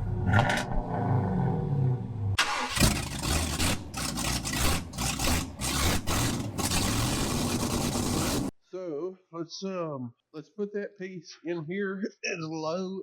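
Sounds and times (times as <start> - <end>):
engine starting and running: 0.0 - 8.5.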